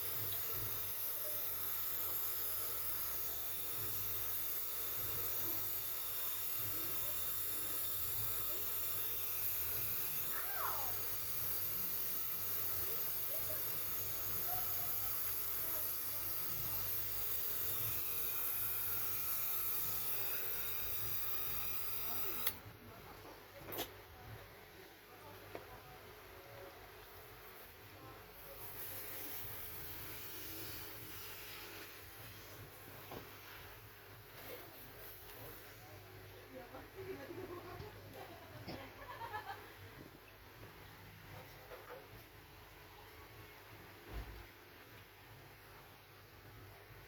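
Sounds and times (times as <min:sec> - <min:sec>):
steady high-pitched hiss: 0:00.0 - 0:22.6.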